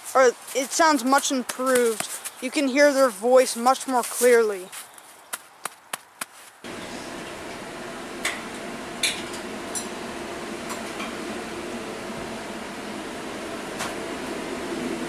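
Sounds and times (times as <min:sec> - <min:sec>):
machine hum with faint tone: 0:06.7 - 0:15.0.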